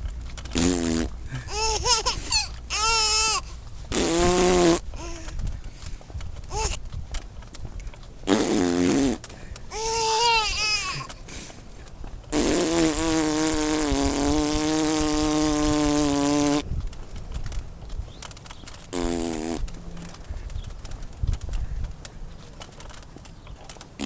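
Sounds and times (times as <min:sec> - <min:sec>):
person making fake fart sounds: 0:00.5 - 0:04.9, 0:08.2 - 0:11.1, 0:12.3 - 0:16.7, 0:18.9 - 0:19.8
baby laughing: 0:01.3 - 0:03.5, 0:06.5 - 0:06.8, 0:09.7 - 0:11.2.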